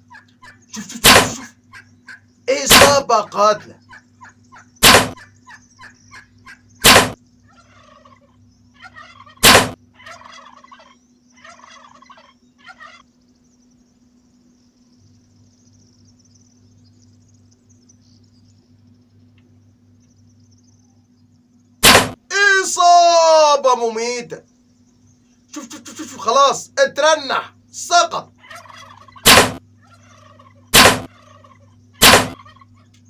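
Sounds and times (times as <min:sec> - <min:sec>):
turkey gobbling: 0:00.0 - 0:13.1, 0:25.5 - 0:26.4, 0:28.1 - 0:32.9
loud sharp cracks: 0:00.8 - 0:01.5, 0:02.7 - 0:03.1, 0:04.8 - 0:05.2, 0:06.8 - 0:07.2, 0:09.4 - 0:09.8, 0:21.8 - 0:22.2, 0:29.2 - 0:29.6, 0:30.7 - 0:31.1, 0:32.0 - 0:32.4.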